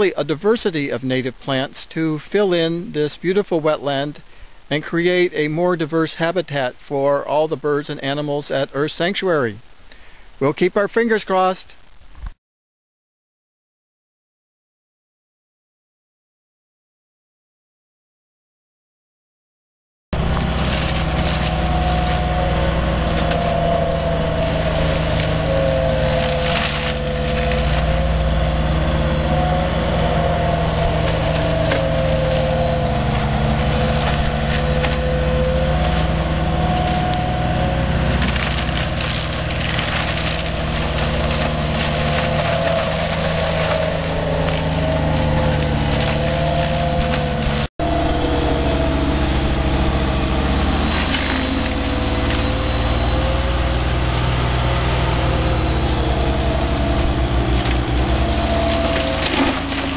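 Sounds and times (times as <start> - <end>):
mulcher engine running: 20.1 - 59.9
woody stems crackling and splintering: 20.2 - 59.9.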